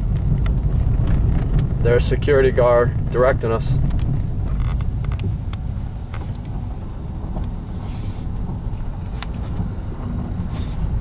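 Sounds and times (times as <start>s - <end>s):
car cabin rumble: 0.0s - 11.0s
brief hiss: 7.7s - 8.3s.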